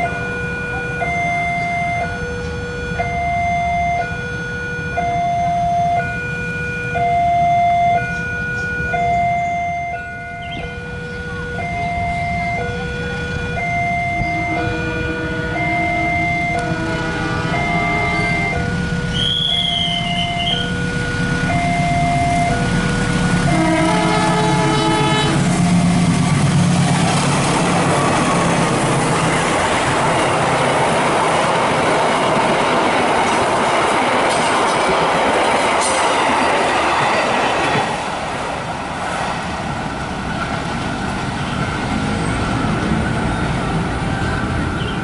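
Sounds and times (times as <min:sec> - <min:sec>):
train rumble and wheel clatter: 0:00.0 - 0:06.6, 0:07.3 - 0:45.0
train horn: 0:14.2 - 0:25.7.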